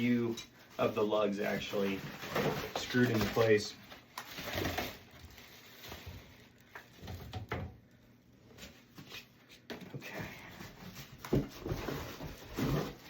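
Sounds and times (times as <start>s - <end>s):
packing material rustling: 0.0s - 7.2s.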